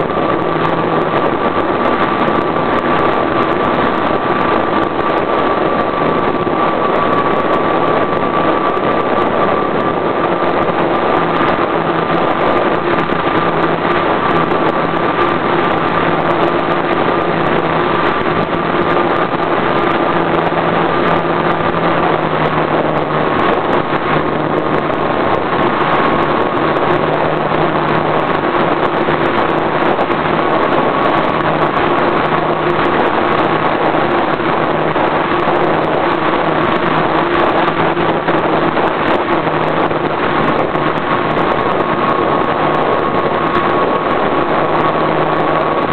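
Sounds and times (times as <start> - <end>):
model airplane engine running: 0.0 - 45.9
rushing noise: 0.0 - 45.9.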